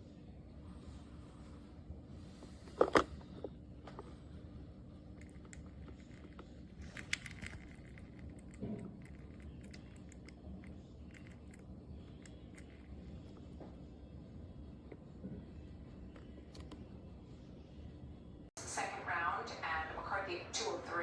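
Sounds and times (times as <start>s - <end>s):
low steady hum: 0.0s - 21.0s
coffee maker crackling and popping: 5.2s - 13.8s.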